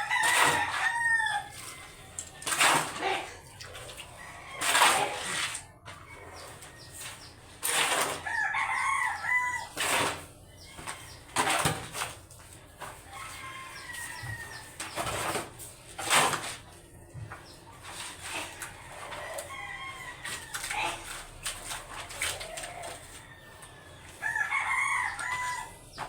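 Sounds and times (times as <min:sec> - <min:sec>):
rooster crowing: 0:00.0 - 0:02.2, 0:08.1 - 0:09.8, 0:13.0 - 0:14.8, 0:18.5 - 0:21.2, 0:21.9 - 0:26.0.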